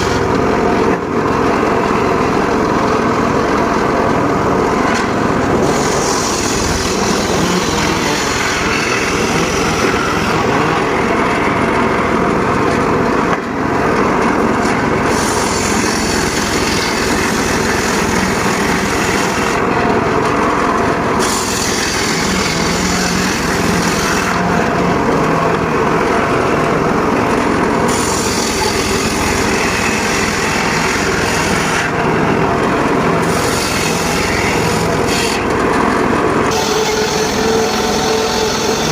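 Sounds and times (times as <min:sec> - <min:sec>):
circular saw running: 0:00.0 - 0:38.9
saw blade cutting wood hiss: 0:05.6 - 0:10.9, 0:15.1 - 0:19.6, 0:21.2 - 0:24.8, 0:27.9 - 0:32.0, 0:33.2 - 0:35.5, 0:36.5 - 0:38.9.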